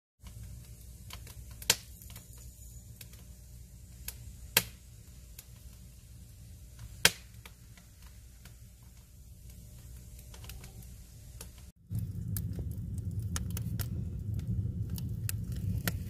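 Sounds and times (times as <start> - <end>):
firewood crackling: 0.2 - 16.0
steady low rumble: 10.9 - 16.0.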